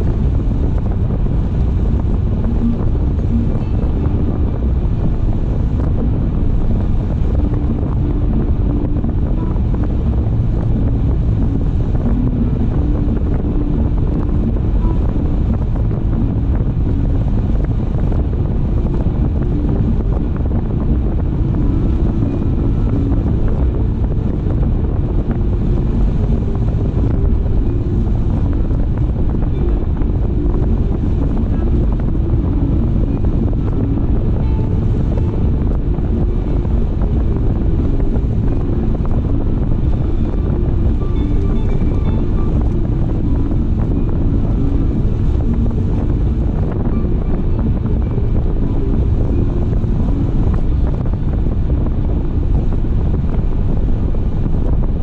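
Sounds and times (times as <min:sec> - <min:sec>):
car road and wind noise: 0:00.0 - 0:55.0.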